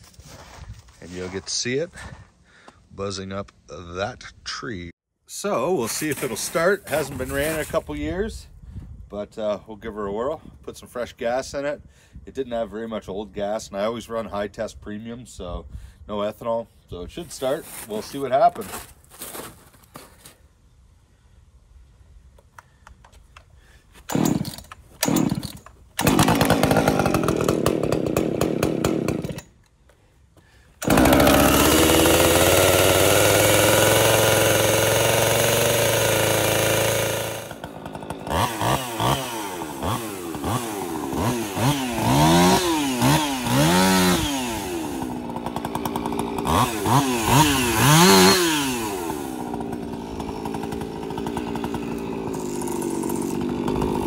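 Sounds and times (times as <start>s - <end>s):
chainsaw starting and revving: 5.9s - 8.2s, 24.0s - 29.6s, 30.8s - 54.0s.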